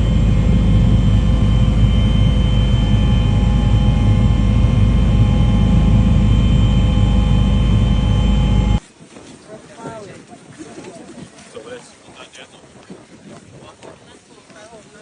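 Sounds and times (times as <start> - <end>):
engine drone with whine: 0.0 - 8.8.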